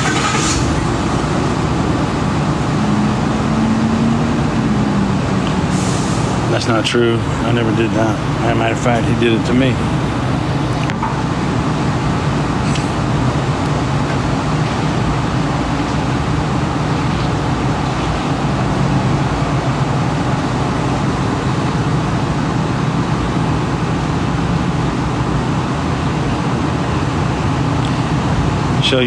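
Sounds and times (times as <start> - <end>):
road traffic rumble: 0.0 - 29.0.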